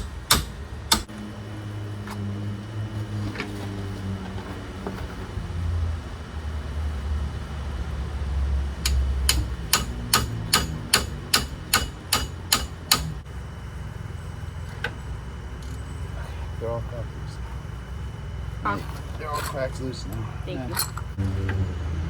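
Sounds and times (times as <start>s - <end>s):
hammer striking metal: 0.0s - 1.1s, 8.8s - 13.2s.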